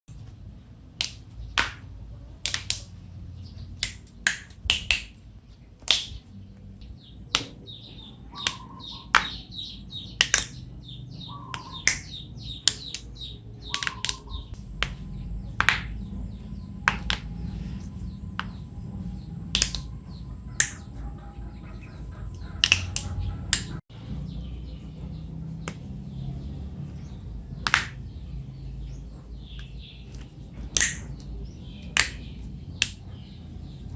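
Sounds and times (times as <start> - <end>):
knuckles cracking: 1.0 - 3.0, 3.7 - 5.2, 5.8 - 6.2, 6.8 - 7.6, 8.4 - 16.0, 16.8 - 17.3, 19.5 - 19.9, 20.6 - 20.9, 22.3 - 23.8, 27.6 - 28.0, 29.5 - 33.0.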